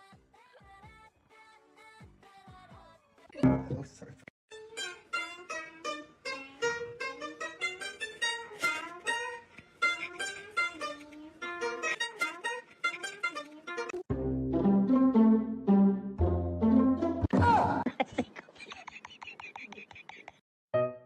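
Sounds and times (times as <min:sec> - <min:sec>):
plucked string instrument music: 0:03.4 - 0:03.9, 0:04.5 - 0:17.3, 0:20.7 - 0:21.0
music with deep low part: 0:03.4 - 0:04.0, 0:14.1 - 0:17.3.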